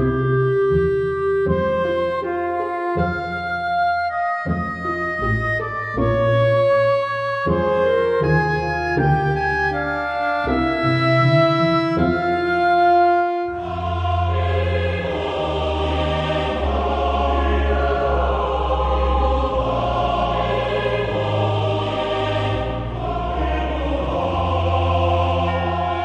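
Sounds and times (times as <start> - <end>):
deep bass: 13.5 - 26.0.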